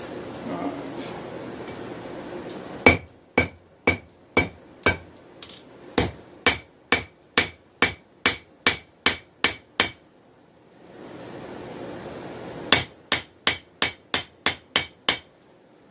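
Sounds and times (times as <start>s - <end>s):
hammer striking steel on anvil: 2.9s - 5.1s, 6.0s - 10.0s, 12.7s - 15.3s.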